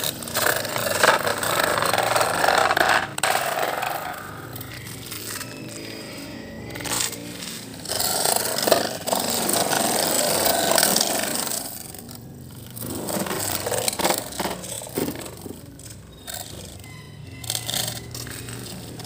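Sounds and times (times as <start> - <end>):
plastic toy trucks scraping and clattering: 0.0 - 19.0.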